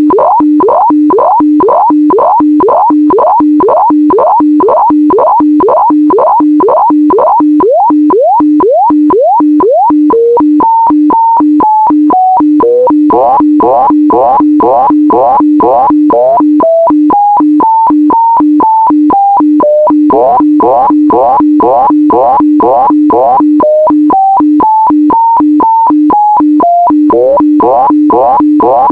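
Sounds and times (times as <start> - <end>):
sharp ticks: 0.0 - 28.9
sweeping and stepping higher tones: 0.1 - 10.5, 11.8 - 17.1, 19.6 - 23.9, 26.2 - 28.9.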